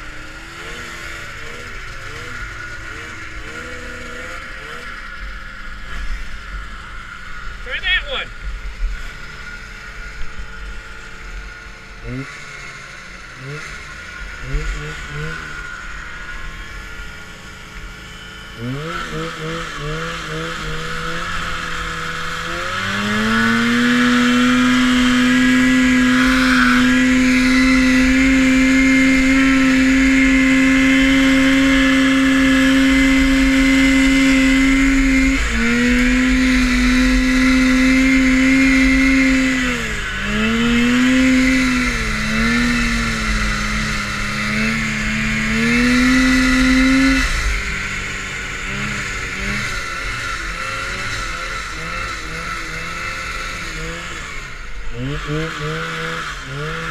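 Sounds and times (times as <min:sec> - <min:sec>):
snowmobile engine revving: 0:00.0 - 0:56.9.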